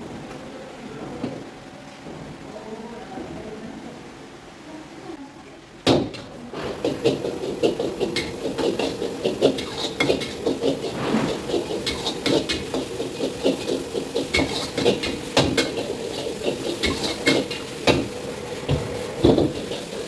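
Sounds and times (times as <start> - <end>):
kitchen hum: 5.5 - 20.0
metal spatula scraping wok: 7.3 - 18.2.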